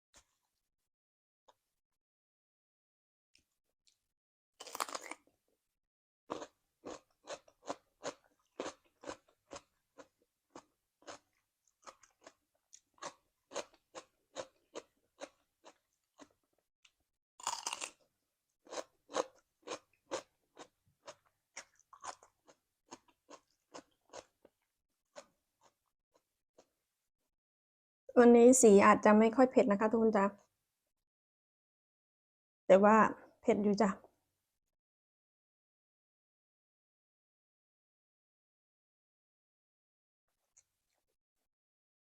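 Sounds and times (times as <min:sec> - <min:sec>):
crunching bites: 0:04.6 - 0:05.3, 0:06.3 - 0:16.3, 0:17.4 - 0:18.0
crunchy chewing: 0:04.6 - 0:05.3, 0:06.3 - 0:16.5, 0:17.4 - 0:18.0, 0:18.6 - 0:25.9.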